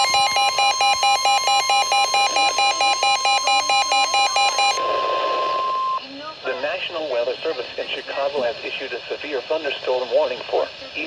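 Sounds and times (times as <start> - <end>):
pulsing beeping alarm: 0.0 - 6.0
steady warning tone: 0.0 - 6.0.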